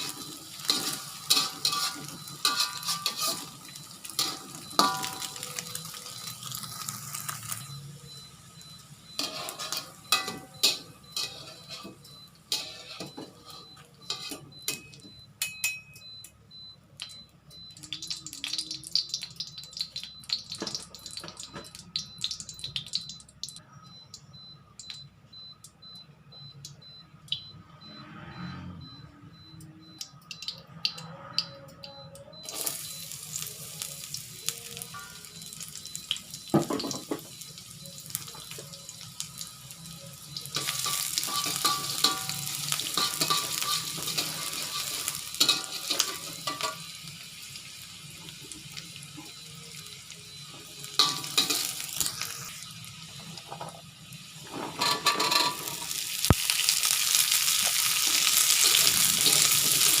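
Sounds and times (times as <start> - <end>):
spatula scraping a pan: 0.0 - 5.0, 9.2 - 14.4
food sizzling in a frying pan: 0.0 - 15.1, 17.0 - 23.2, 32.4 - 60.0.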